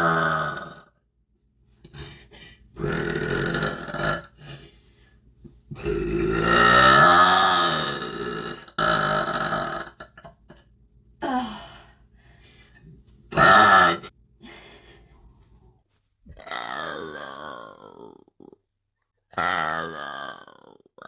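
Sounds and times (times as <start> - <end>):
woman burping: 2.8 - 4.6, 5.7 - 11.5, 13.3 - 14.1, 16.4 - 18.6.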